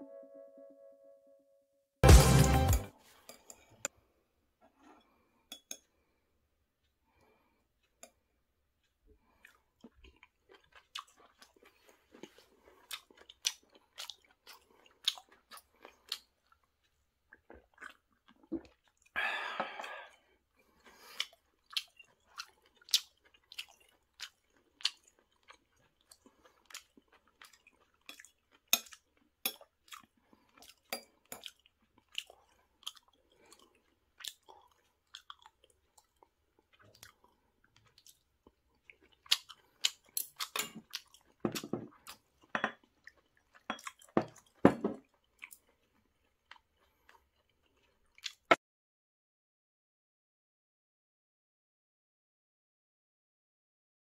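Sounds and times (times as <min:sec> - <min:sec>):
person chewing crunchy food: 0:08.8 - 0:48.5.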